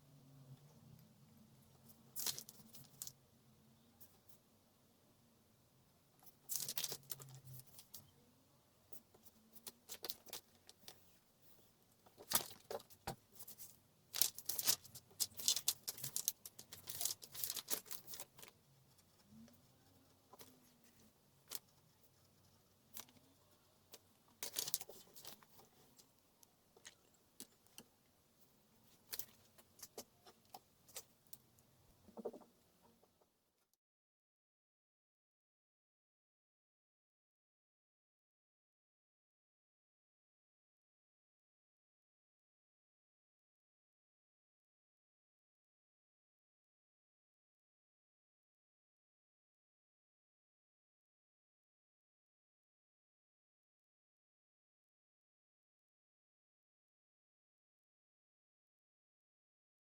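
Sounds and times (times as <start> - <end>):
objects clicking and rustling: 12.0 - 18.5, 23.9 - 25.7.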